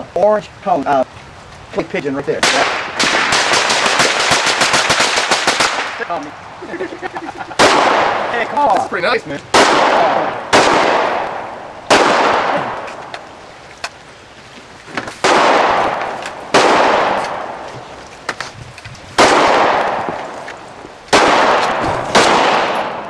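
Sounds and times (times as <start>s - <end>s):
gunshots with echo: 2.4s - 6.2s, 7.6s - 8.5s, 9.5s - 12.9s, 15.2s - 17.7s, 19.2s - 20.4s, 21.1s - 23.0s.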